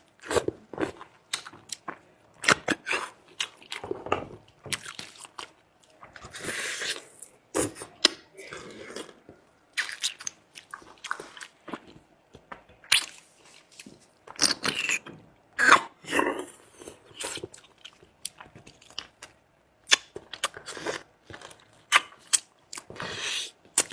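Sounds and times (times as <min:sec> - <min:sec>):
person chewing and crunching: 0:00.1 - 0:23.9.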